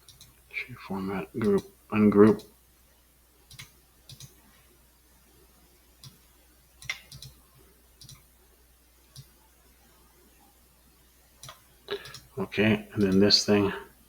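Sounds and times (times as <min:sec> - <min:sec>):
computer mouse buttons clicking: 0:00.0 - 0:00.3, 0:03.5 - 0:04.4, 0:06.8 - 0:07.4, 0:08.0 - 0:08.2, 0:09.1 - 0:09.3, 0:11.4 - 0:12.3.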